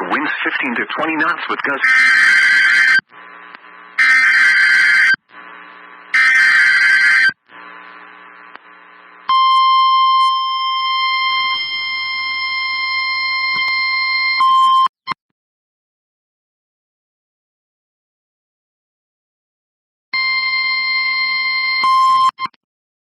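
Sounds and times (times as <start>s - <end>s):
screechy digital data bursts: 1.8s - 3.0s
steady warning alarm tone: 1.8s - 3.0s, 4.0s - 5.2s, 6.2s - 7.4s.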